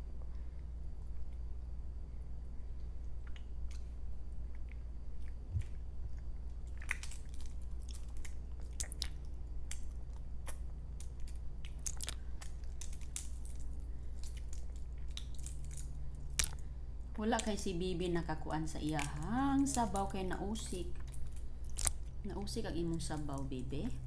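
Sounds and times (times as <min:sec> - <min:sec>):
steady low hum: 0:00.0 - 0:24.0
wet chewing and mouth clicks: 0:02.8 - 0:17.6, 0:18.6 - 0:23.2.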